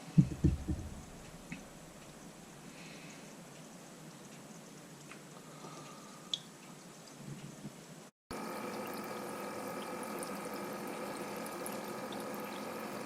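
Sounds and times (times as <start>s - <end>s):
faint steady hum: 0.0s - 13.0s
oil sizzling and bubbling: 0.0s - 13.0s.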